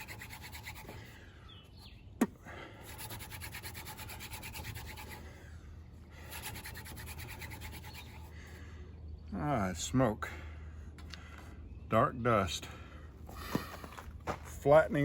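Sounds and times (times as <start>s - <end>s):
hand drill rubbing on wooden board: 0.0s - 1.2s, 2.8s - 5.3s, 6.2s - 8.3s.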